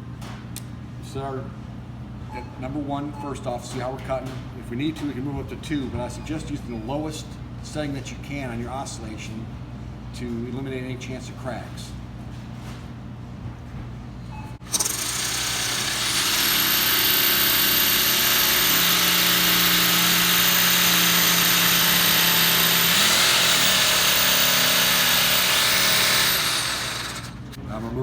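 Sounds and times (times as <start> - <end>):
jigsaw cutting plastic: 14.6 - 27.6.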